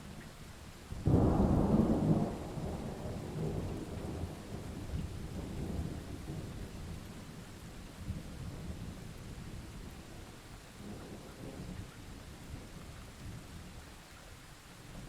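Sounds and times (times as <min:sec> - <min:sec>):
steady rain falling: 0:00.0 - 0:15.0
thunder rumbling: 0:01.0 - 0:06.7.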